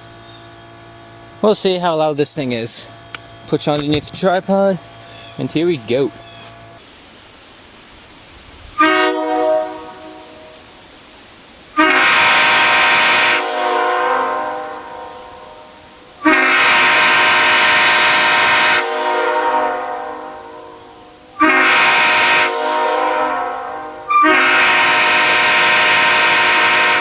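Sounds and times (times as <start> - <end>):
locomotive air horn blasts: 8.8 - 10.6, 11.7 - 27.0.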